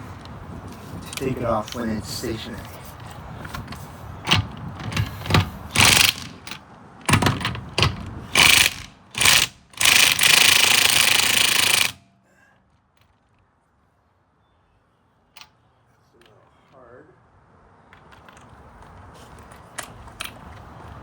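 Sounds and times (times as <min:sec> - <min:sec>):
impact driver hammering: 0:04.3 - 0:12.0.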